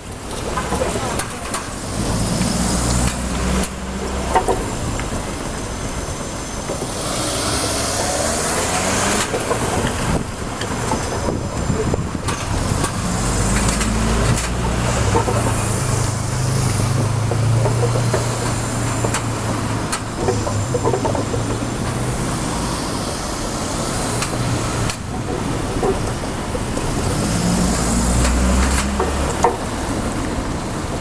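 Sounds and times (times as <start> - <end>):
vehicle engines idling: 0.0 - 31.0
vehicles passing by: 0.0 - 31.0.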